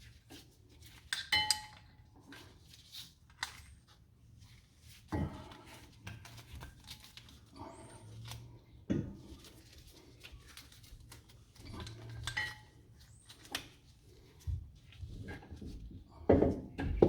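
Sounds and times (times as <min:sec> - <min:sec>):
tools clinking and knocking: 0:01.2 - 0:01.9.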